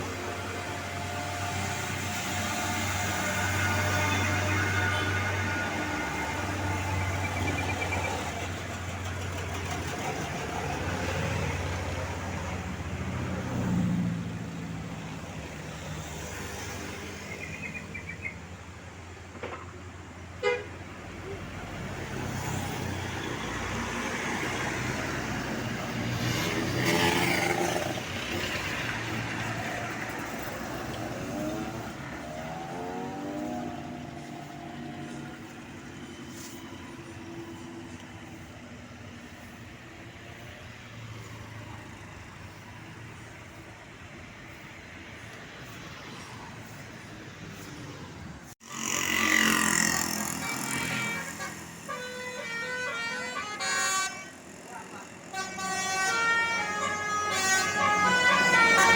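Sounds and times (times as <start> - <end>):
traffic engine rumble: 0.0 - 58.9
multi-tone bus horn: 2.9 - 7.4, 20.4 - 20.9, 50.0 - 58.9.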